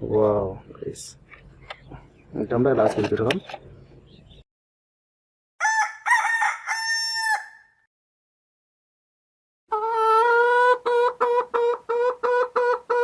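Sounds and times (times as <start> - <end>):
rooster crowing: 5.6 - 7.9.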